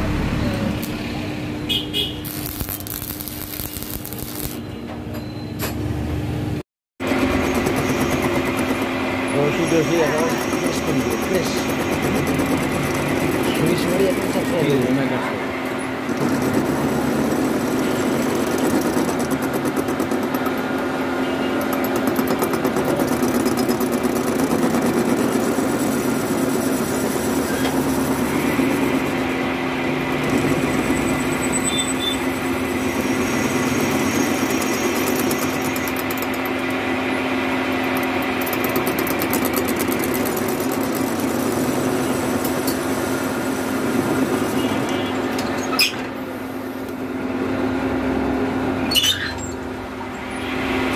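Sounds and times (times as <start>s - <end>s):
high steady whine: 0.0s - 4.7s
machine humming: 0.0s - 4.7s, 7.0s - 45.4s.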